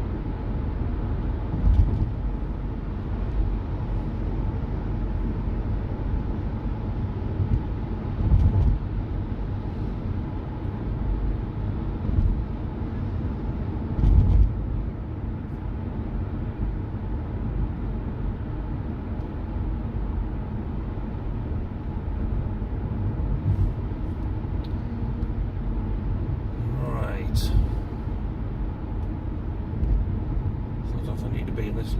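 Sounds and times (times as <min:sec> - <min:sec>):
car tyre and engine rumble: 0:00.0 - 0:31.9
road thumps: 0:01.5 - 0:02.2, 0:07.4 - 0:08.9, 0:13.9 - 0:14.6.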